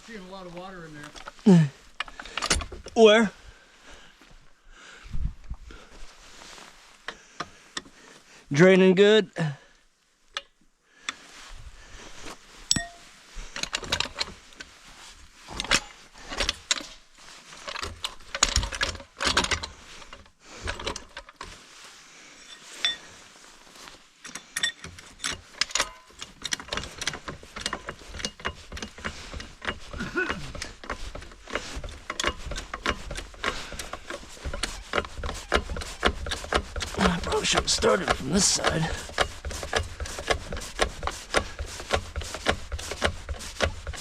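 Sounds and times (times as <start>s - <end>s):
metal tools clinking and rattling: 2.0s - 3.0s, 12.7s - 14.4s, 15.5s - 17.0s, 22.4s - 23.2s, 24.2s - 39.9s.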